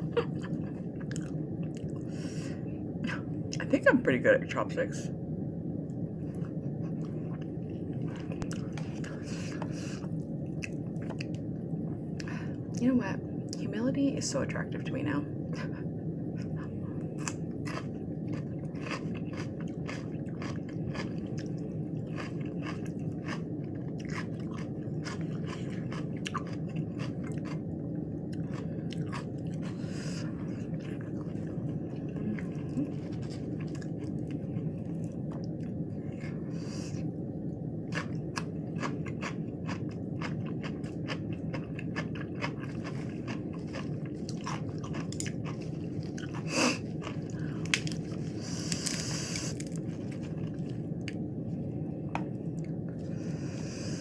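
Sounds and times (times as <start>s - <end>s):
low background noise: 0.0s - 54.0s
crunchy chewing: 6.3s - 11.4s, 16.4s - 37.1s, 37.9s - 51.2s.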